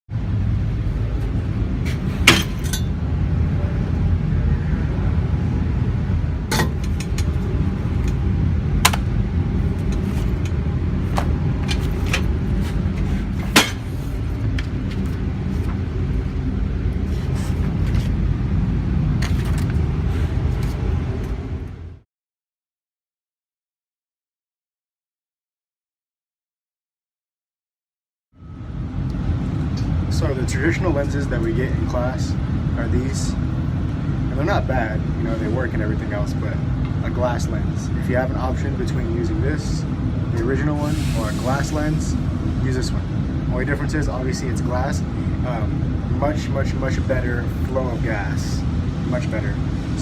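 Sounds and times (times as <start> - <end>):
machinery low rumble: 0.1 - 22.0, 28.4 - 50.0.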